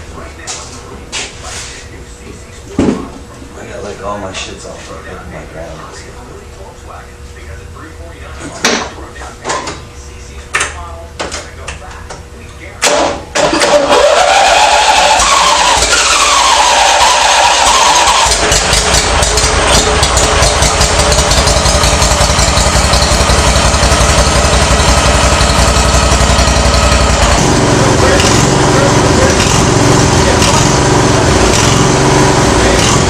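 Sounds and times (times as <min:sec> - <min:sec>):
lawn mower engine starting and running: 0:12.9 - 0:33.0.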